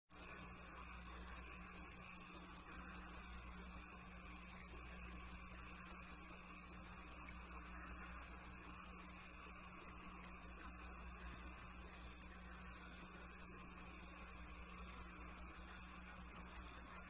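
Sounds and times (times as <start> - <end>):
crickets trilling: 0.1 - 17.0.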